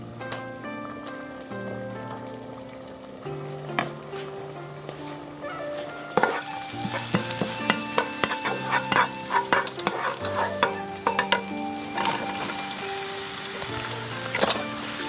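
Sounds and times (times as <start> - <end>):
food sizzling in a pan: 0.0 - 15.0
utensil knocking and scraping pan: 6.2 - 12.6.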